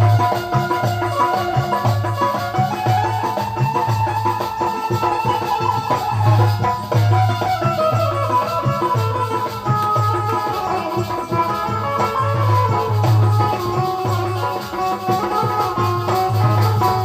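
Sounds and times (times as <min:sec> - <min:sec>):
drum beating steady rhythm: 0:00.0 - 0:17.0
shaken rattle percussion: 0:00.0 - 0:17.0
wavering melody line: 0:00.2 - 0:17.0.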